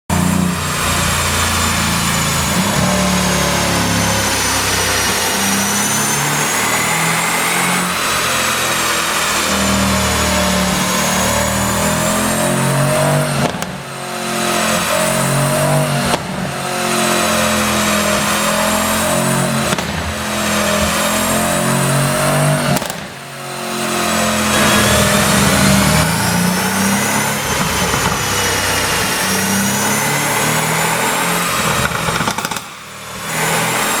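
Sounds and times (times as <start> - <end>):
car engine revving: 0.1 - 34.0
exhaust pops and crackles: 13.2 - 13.9, 16.0 - 16.6, 19.5 - 21.1, 22.6 - 23.3, 31.7 - 32.8.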